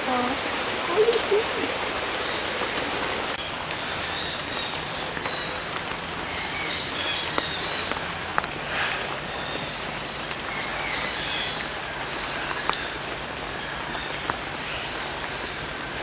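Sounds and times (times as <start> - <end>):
rushing water: 0.0 - 16.0
birds chirping: 0.9 - 8.0.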